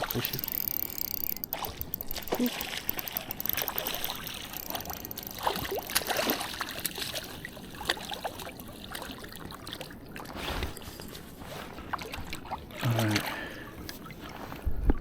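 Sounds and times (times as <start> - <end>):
stream water trickling: 0.0 - 15.0
short sharp splashes: 5.4 - 8.3.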